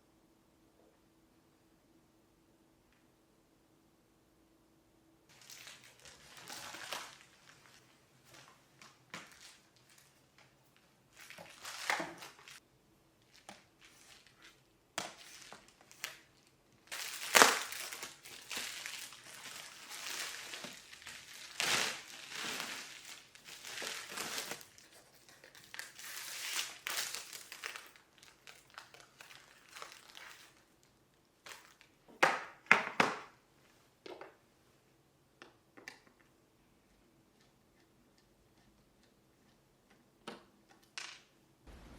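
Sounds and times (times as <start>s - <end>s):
crinkly material crumpling: 5.3s - 12.6s, 13.2s - 32.0s.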